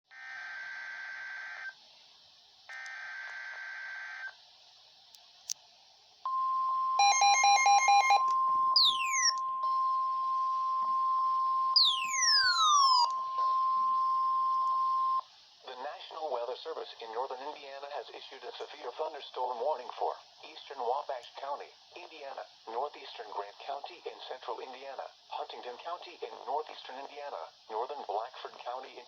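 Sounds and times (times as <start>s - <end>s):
quick beeps: 6.3s - 15.2s
steady warning alarm tone: 6.3s - 15.2s
screechy digital header tones: 7.0s - 15.2s
falling whistle-like tones: 8.7s - 15.2s.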